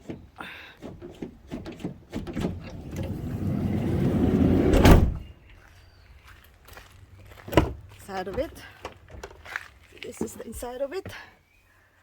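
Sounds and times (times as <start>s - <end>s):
van sliding door slamming: 2.1s - 5.3s.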